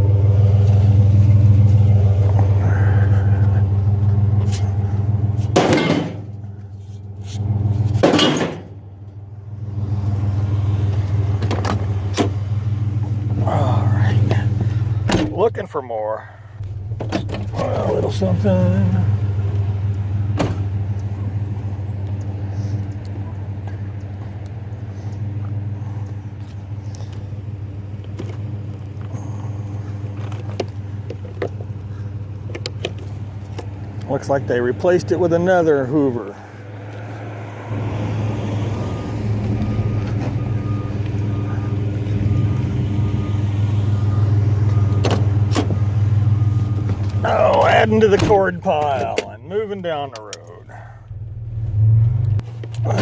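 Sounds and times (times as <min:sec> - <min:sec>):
truck engine running: 0:00.0 - 0:53.0.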